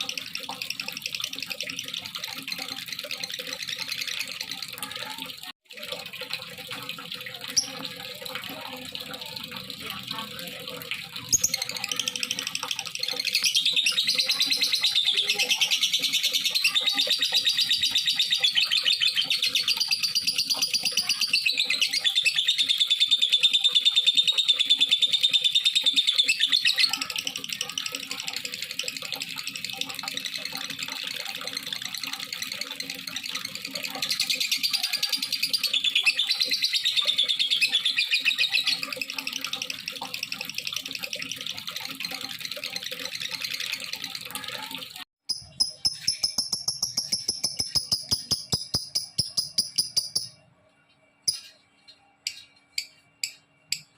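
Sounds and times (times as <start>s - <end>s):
lovebird chattering trills: 11.3s - 28.8s, 45.3s - 50.4s.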